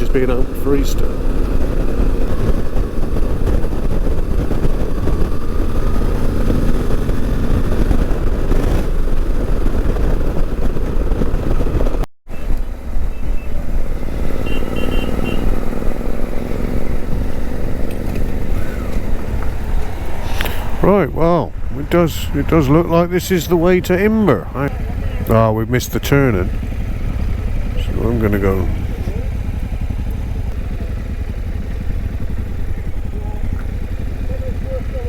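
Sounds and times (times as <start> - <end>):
wind rumble on microphone: 0.0 - 25.5
motorcycle engine running: 0.0 - 35.0.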